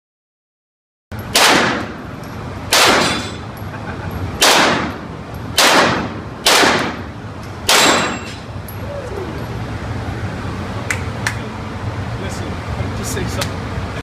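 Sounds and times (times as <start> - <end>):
gunshots: 1.3 - 2.0, 2.7 - 3.4, 4.4 - 5.0, 5.6 - 7.1, 7.7 - 8.3.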